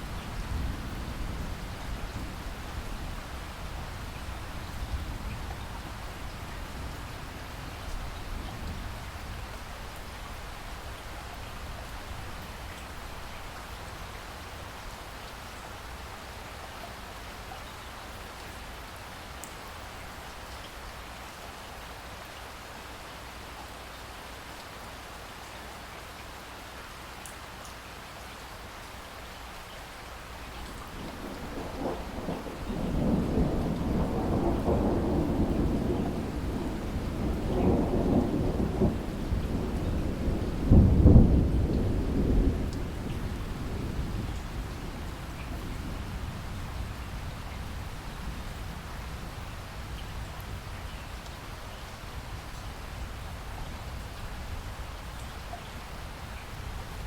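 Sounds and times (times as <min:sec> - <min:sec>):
steady rain falling: 0:00.0 - 0:57.0
thunder rolling: 0:31.0 - 0:47.0.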